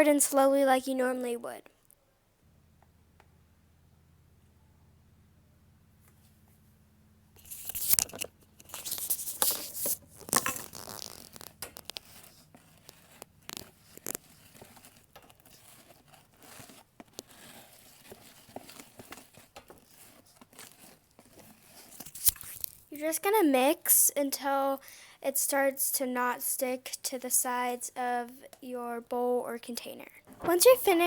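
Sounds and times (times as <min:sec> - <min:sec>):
slime being stirred in a bowl: 0:07.4 - 0:22.9.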